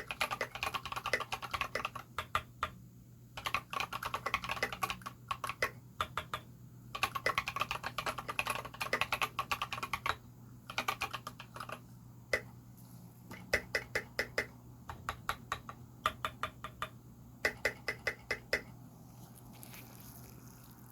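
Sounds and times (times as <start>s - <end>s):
typing on mechanical keyboard: 0.0s - 2.5s, 3.4s - 6.4s, 7.0s - 11.8s, 17.5s - 18.6s.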